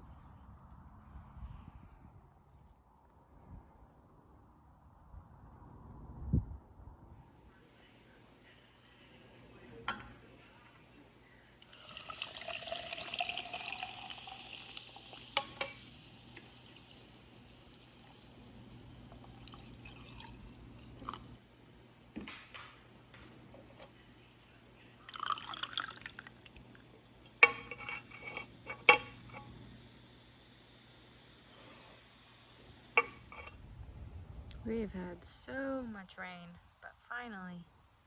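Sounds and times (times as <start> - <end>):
liquid pouring into a vessel: 11.6 - 21.5, 23.5 - 33.6
sharp clinks and knocks: 15.4 - 15.9, 27.3 - 29.6, 33.0 - 33.6.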